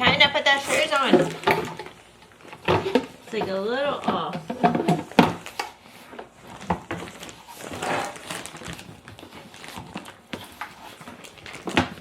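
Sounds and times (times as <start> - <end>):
handling knocks and clicks: 1.1 - 7.3.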